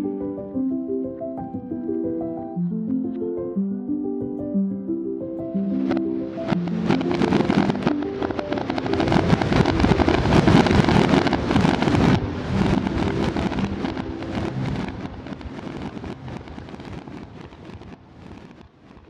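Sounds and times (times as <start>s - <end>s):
fireworks crackling: 5.8s - 19.0s.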